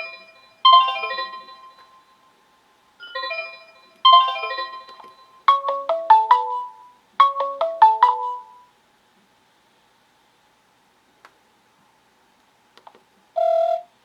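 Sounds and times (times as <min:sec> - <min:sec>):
phone ringtone melody: 0:00.0 - 0:02.1, 0:03.0 - 0:08.6, 0:13.4 - 0:13.8.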